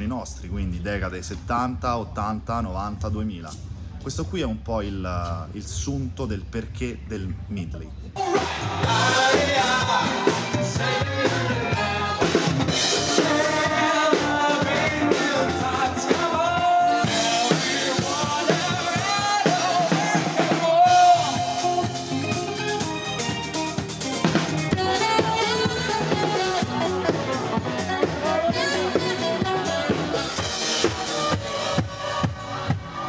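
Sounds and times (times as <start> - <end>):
person singing: 8.2 - 22.8, 24.7 - 33.0
drum kit: 8.2 - 33.0.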